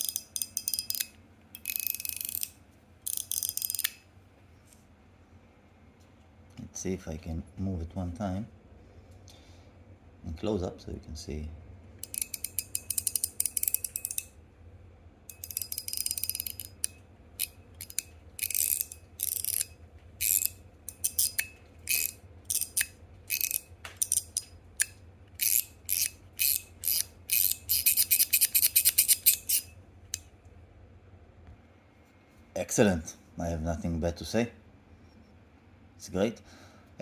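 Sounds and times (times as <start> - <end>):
fidget slider clicking: 0.0 - 4.0, 12.0 - 14.3, 15.3 - 30.2.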